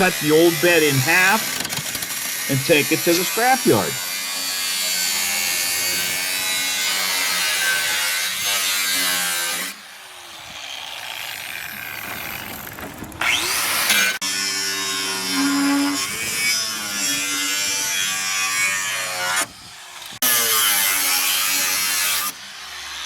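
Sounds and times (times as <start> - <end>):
power saw cutting steel: 0.0 - 23.0.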